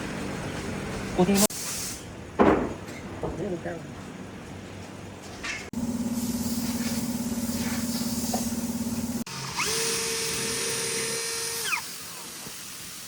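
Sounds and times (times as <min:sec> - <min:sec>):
high-pitched motor spinning: 0:05.8 - 0:12.4
power tool motor pulsing: 0:08.2 - 0:12.7.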